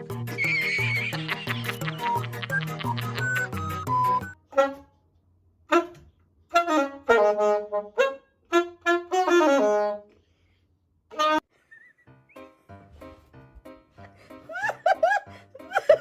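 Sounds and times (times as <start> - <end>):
saxophone-like wind instrument: 5.7 - 10.1, 11.1 - 11.4.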